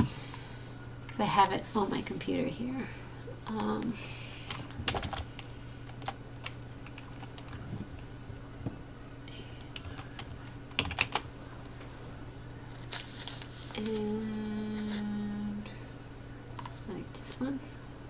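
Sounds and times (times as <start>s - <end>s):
steady low hum: 0.0s - 18.0s
computer keyboard typing: 4.5s - 7.6s, 9.6s - 11.3s.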